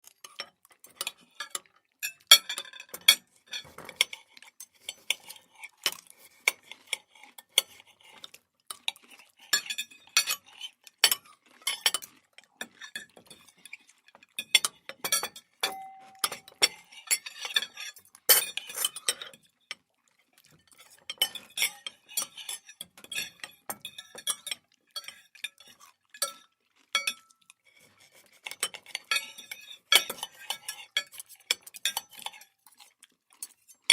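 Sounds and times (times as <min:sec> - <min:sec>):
cutlery clinking on plates: 0:00.3 - 0:05.4, 0:14.4 - 0:19.4, 0:21.1 - 0:25.6, 0:26.2 - 0:27.3, 0:28.5 - 0:32.5
dish or glass ringing ping: 0:15.6 - 0:16.6.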